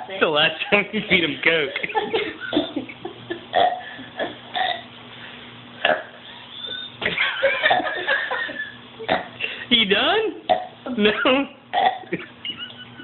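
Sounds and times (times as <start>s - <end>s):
boy burping: 3.5s - 4.9s, 5.8s - 6.2s, 9.1s - 9.4s, 11.7s - 12.2s.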